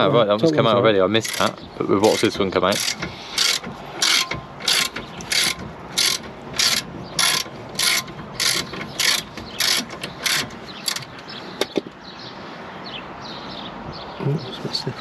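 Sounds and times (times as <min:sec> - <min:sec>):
ratchet wrench clicking: 0:01.2 - 0:11.2.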